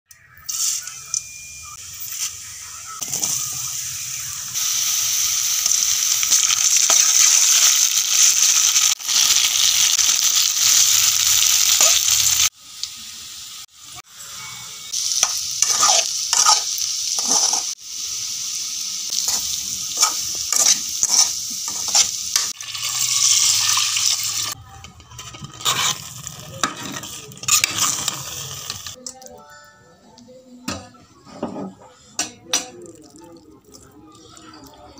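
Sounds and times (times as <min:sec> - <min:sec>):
food sizzling in hot oil: 0:00.3 - 0:24.6, 0:25.2 - 0:29.0
utensil scraping a pan: 0:15.6 - 0:17.8, 0:20.0 - 0:22.6, 0:25.1 - 0:29.0.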